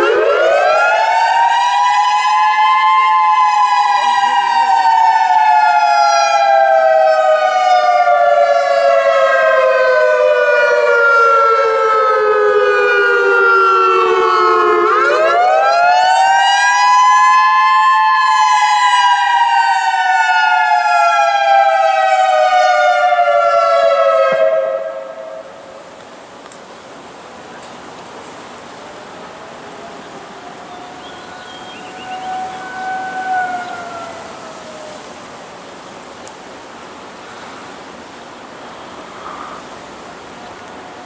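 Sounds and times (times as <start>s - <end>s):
warning siren wailing: 0.0s - 26.0s, 28.6s - 35.2s.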